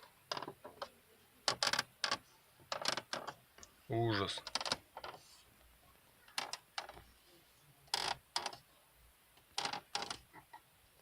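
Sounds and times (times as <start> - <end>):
plastic console creaking: 0.0 - 3.4, 4.3 - 5.2, 6.3 - 7.1, 7.9 - 8.6, 9.5 - 10.6.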